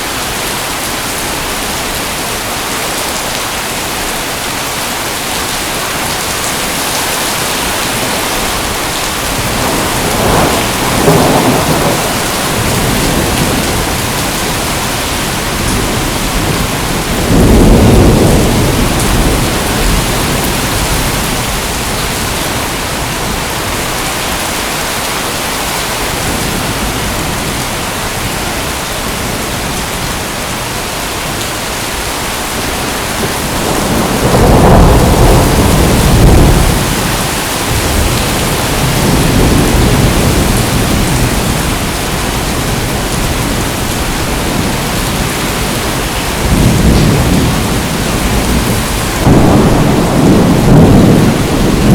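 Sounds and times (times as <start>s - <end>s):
heavy rain: 0.0s - 51.9s
thunder rumbling: 6.1s - 24.0s, 32.5s - 51.9s.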